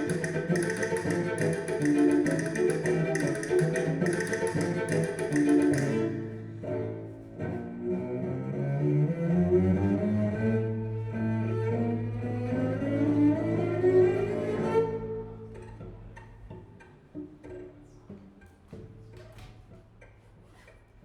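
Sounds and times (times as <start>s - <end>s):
soft plucked notes: 0.0s - 7.8s
bowed low strings: 0.0s - 19.2s.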